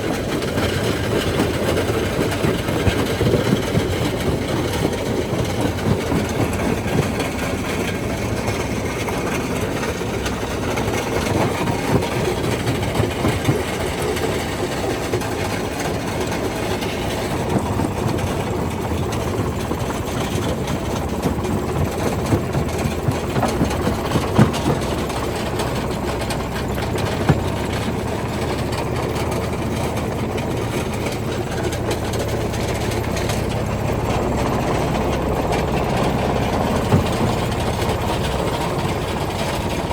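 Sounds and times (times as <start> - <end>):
rock crusher rumbling and grinding: 0.0 - 39.9
sharp knocks: 19.2 - 28.6, 31.8 - 39.2.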